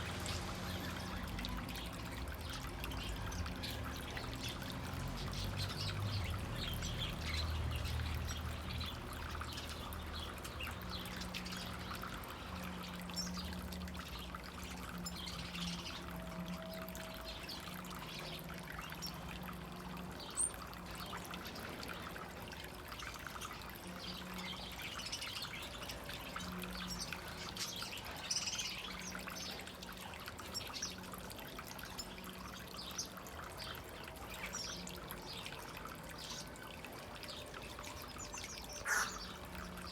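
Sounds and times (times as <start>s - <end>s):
water trickling and splashing: 0.0s - 39.9s
bird chirps: 38.8s - 39.4s.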